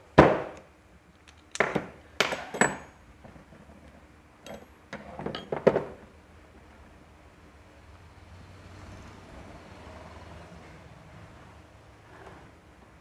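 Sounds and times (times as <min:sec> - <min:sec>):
metal tools clinking: 0:02.3 - 0:03.0, 0:04.4 - 0:05.7.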